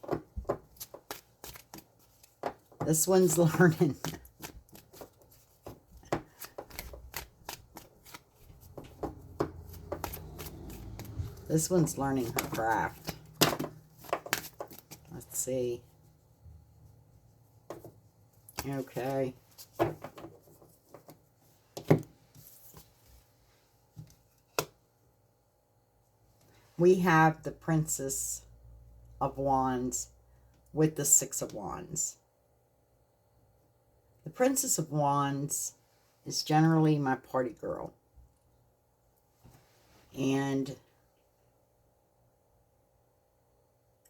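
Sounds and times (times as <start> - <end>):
cards being shuffled: 0.0 - 15.4.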